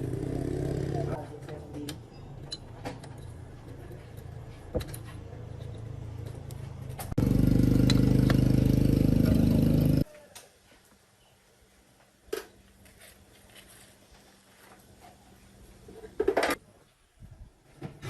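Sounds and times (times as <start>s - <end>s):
diesel engine running: 0.0s - 1.2s, 5.9s - 10.0s.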